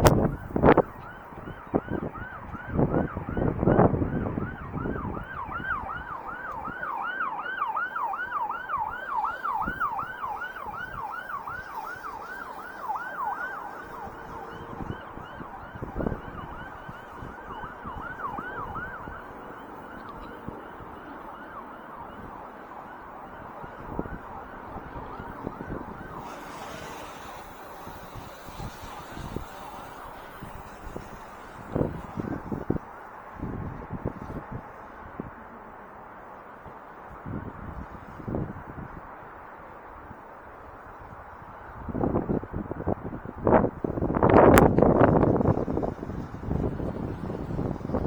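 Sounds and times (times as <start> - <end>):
siren yelping: 0.0 - 34.4
wind buffeting microphone: 0.0 - 48.0.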